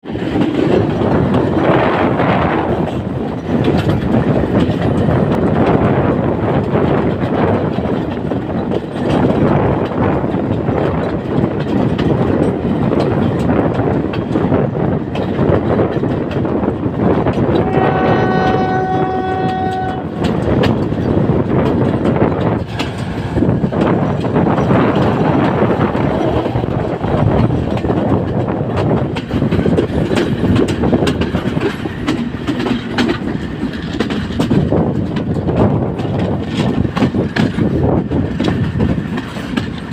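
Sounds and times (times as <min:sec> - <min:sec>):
train wheels clattering on rails: 0:00.0 - 0:39.9
train horn blast: 0:17.5 - 0:20.4.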